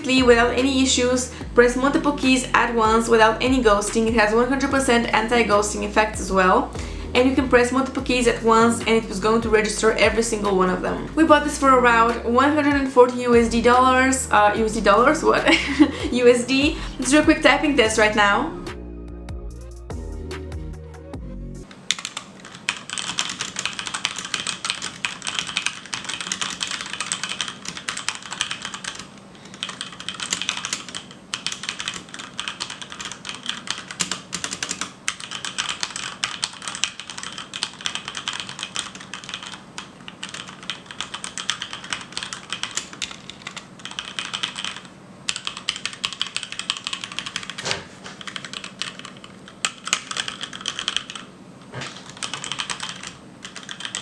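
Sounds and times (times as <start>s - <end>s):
fast mechanical keyboard typing: 21.9s - 51.3s, 51.9s - 54.0s.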